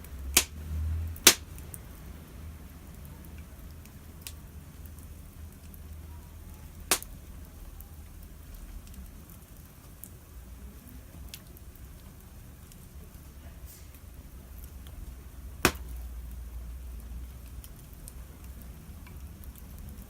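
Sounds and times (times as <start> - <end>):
campfire crackling: 0.0 - 20.0
loud fire pop: 1.2 - 1.5, 6.9 - 7.1, 15.6 - 16.0.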